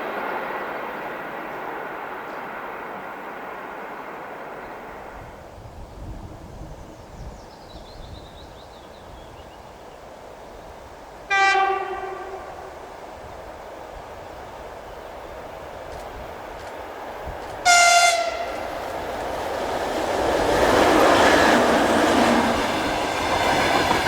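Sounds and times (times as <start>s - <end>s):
low rumble of train: 0.0s - 24.0s
train horn blast: 11.3s - 12.8s, 17.6s - 18.7s.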